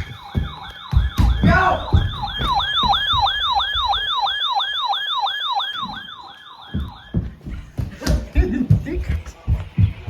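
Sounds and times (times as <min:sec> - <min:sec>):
electronic yelp siren: 0:00.0 - 0:07.4.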